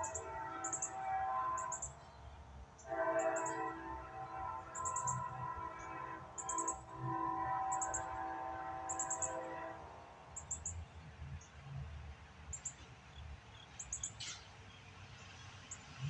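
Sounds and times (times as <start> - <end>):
locomotive air horn: 0.0 - 10.4.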